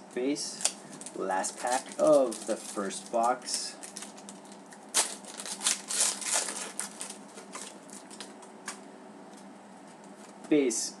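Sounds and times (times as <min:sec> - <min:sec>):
wrapper tearing and crinkling: 0:00.6 - 0:08.3.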